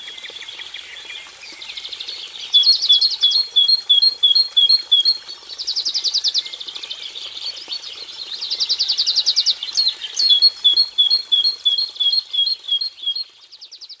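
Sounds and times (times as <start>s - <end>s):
bird singing trills: 2.5s - 5.2s, 9.1s - 14.0s.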